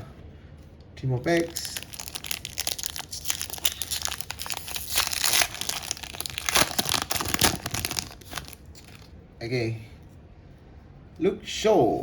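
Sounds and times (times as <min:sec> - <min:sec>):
card pack wrapper tearing: 0:01.4 - 0:09.1.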